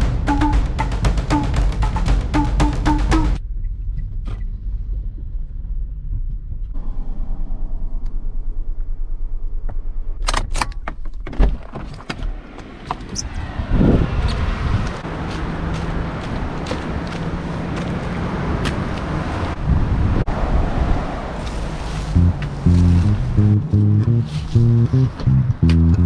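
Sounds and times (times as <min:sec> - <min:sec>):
thump: 0:00.0 - 0:03.4
car engine rumbling: 0:22.2 - 0:24.5.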